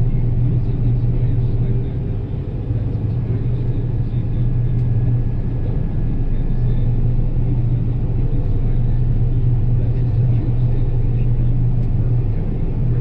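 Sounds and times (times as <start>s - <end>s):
combine harvester diesel drone: 0.0s - 13.0s.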